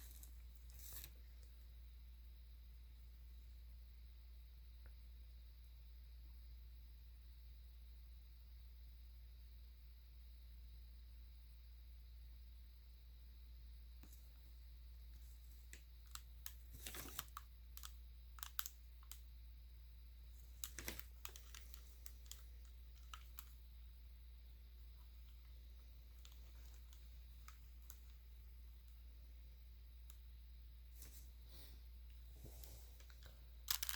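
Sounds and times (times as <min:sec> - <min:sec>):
puzzle cube plastic clicks: 0:15.7 - 0:19.2, 0:33.0 - 0:33.9
steady low hum: 0:17.4 - 0:33.9.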